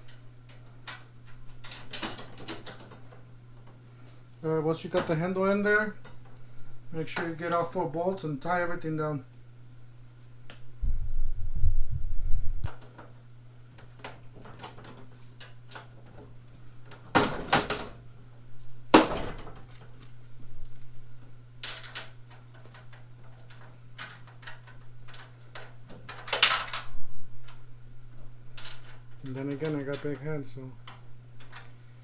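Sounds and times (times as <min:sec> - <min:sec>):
metal parts knocking and rattling: 0:00.0 - 0:03.7, 0:21.6 - 0:26.9, 0:28.6 - 0:30.3
low bumping rumble: 0:10.8 - 0:12.7.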